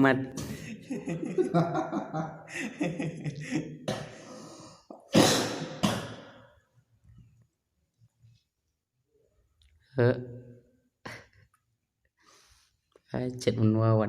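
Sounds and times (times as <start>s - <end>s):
man wheezing laughter: 0.4s - 4.2s
man coughing harshly: 5.1s - 6.5s.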